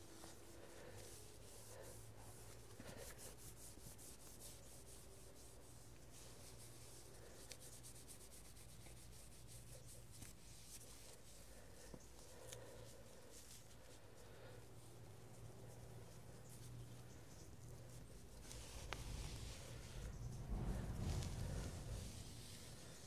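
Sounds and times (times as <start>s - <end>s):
low steady hum: 0.0s - 23.0s
cloth rubbing on wheel: 17.8s - 23.0s.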